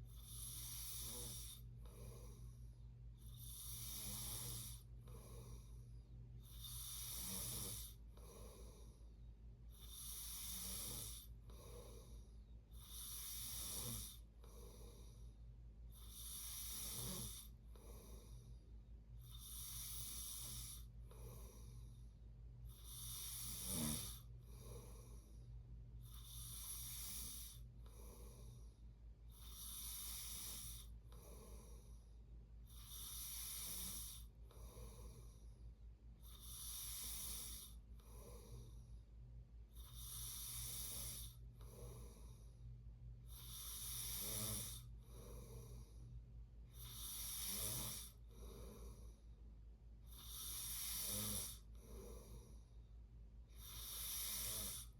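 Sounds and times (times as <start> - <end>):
steady low hum: 0.0 - 54.9
person snoring: 0.1 - 2.5, 3.3 - 5.8, 6.4 - 9.0, 9.8 - 12.2, 12.8 - 15.1, 16.0 - 18.4, 19.3 - 21.8, 22.8 - 25.2, 26.1 - 28.6, 29.4 - 31.9, 32.7 - 35.4, 36.3 - 38.8, 39.8 - 42.4, 43.3 - 46.0, 46.8 - 49.2, 50.1 - 52.6, 53.6 - 54.9.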